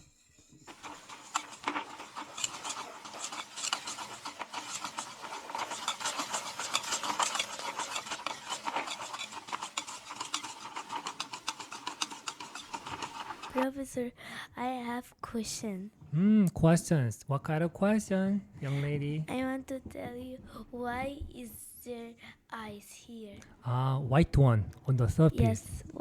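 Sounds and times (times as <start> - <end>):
utensil scraping metal bowl: 0.0 - 13.7.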